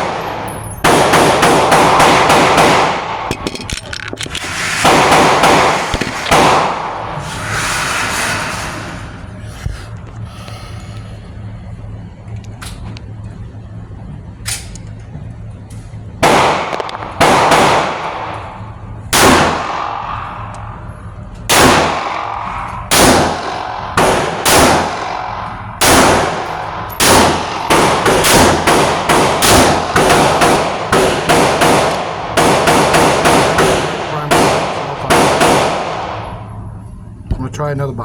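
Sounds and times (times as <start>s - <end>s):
pistol shots with ringing echo: 0.0s - 3.4s, 4.8s - 7.1s, 16.2s - 36.5s.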